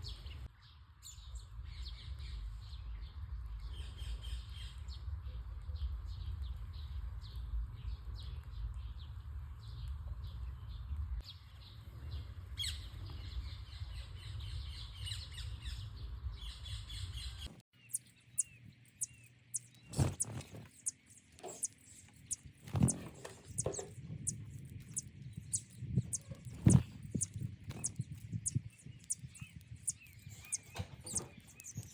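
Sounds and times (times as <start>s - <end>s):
small birds chirping: 0.0s - 31.9s
steady low rumble: 18.0s - 31.9s.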